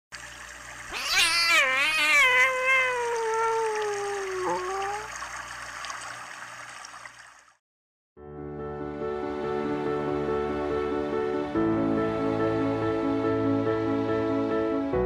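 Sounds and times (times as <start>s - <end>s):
trickle of running water: 0.1s - 7.6s
kitten meowing: 0.9s - 5.1s
soft music: 8.2s - 15.0s.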